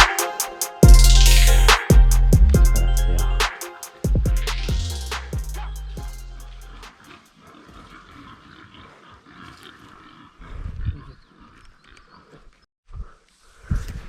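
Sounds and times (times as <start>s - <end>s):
pig grunting: 7.0s - 12.4s.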